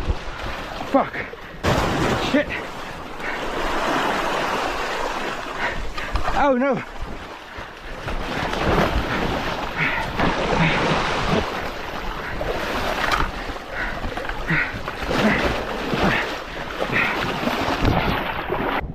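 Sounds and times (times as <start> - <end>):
sea surf washing ashore: 0.0 - 13.8
wind buffeting microphone: 3.0 - 15.1.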